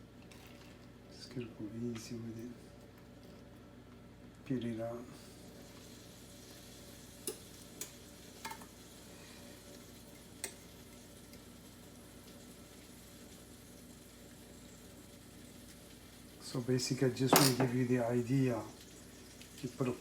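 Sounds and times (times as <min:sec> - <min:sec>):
low hiss: 0:04.4 - 0:20.0.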